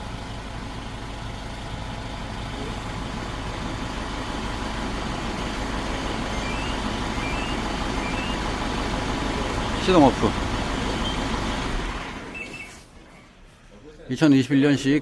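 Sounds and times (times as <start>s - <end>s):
diesel truck engine idling: 0.0s - 15.0s.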